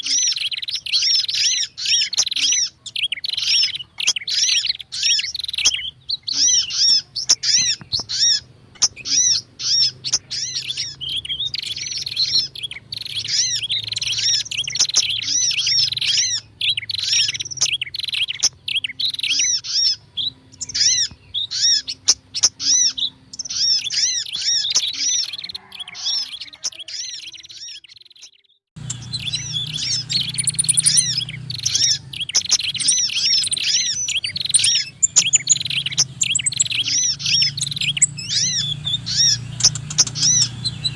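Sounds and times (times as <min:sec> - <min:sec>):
high-pitched bird chirps: 0:00.0 - 0:40.9.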